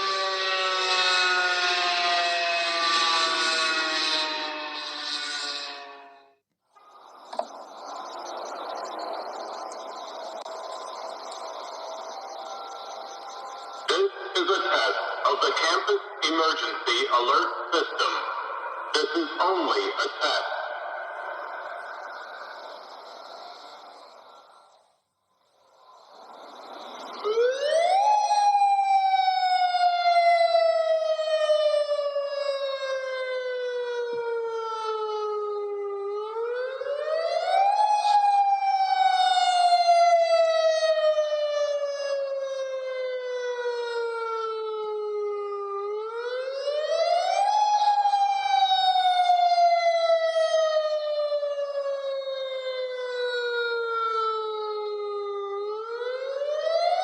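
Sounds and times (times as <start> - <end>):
rising and falling warning siren: 0.0 - 57.0.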